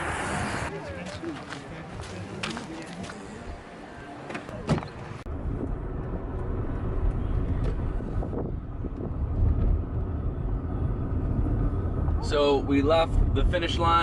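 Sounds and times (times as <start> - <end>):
outdoor ambience: 0.0 - 14.0
car rumble from inside cabin: 5.2 - 14.0.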